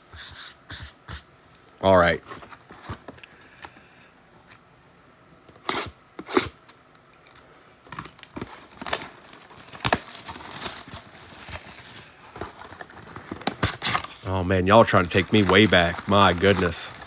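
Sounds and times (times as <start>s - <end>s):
packaging tearing and crinkling: 7.9s - 17.0s.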